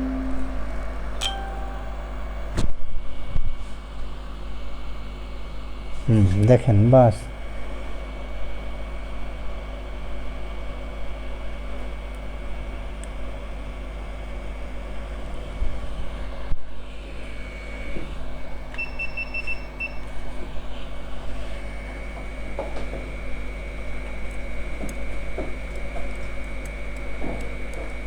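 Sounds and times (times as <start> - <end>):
short electronic beeps: 0.0 - 2.2.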